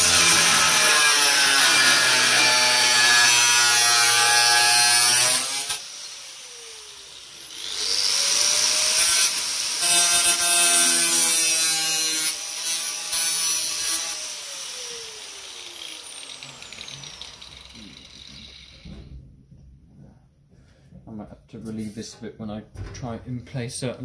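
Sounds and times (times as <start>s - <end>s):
power tool cutting sheet metal: 0.0s - 19.2s
motor winding down whine: 14.7s - 19.1s.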